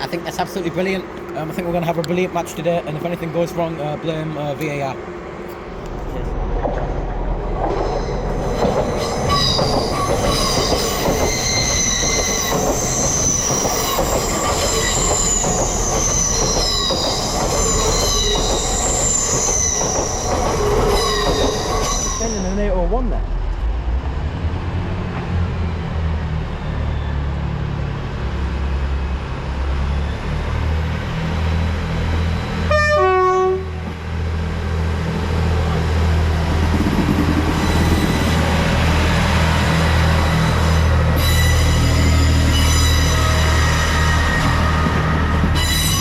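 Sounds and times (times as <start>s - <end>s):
train rumbling past: 0.0s - 46.0s
high-pitched wheel squeal: 8.8s - 22.7s, 37.4s - 38.5s, 41.2s - 46.0s
train horn blast: 32.7s - 33.9s.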